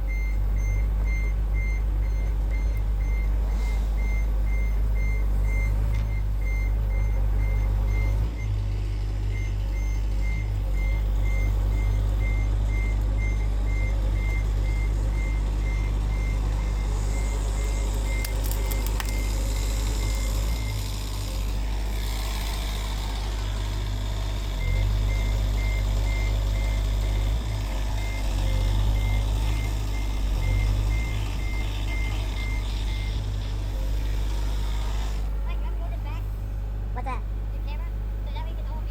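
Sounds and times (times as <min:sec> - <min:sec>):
back-up alarm beeping: 0:00.0 - 0:08.6, 0:09.3 - 0:21.2, 0:24.6 - 0:33.2
diesel engine running: 0:00.0 - 0:38.9.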